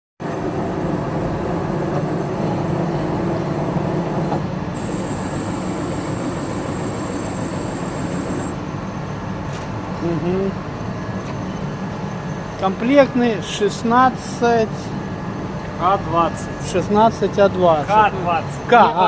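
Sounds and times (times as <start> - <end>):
machinery rumbling hum: 0.3 - 18.7
thin high whine: 4.8 - 8.6.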